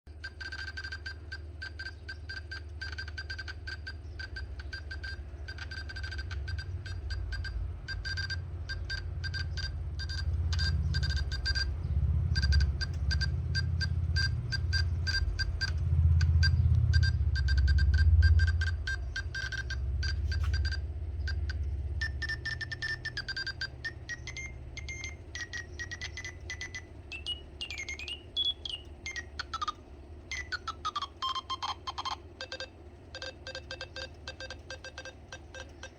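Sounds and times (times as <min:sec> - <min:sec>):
morse code beeps: 0:00.1 - 0:35.9
wavering rising tone: 0:05.1 - 0:32.2
low rumble: 0:06.5 - 0:25.4.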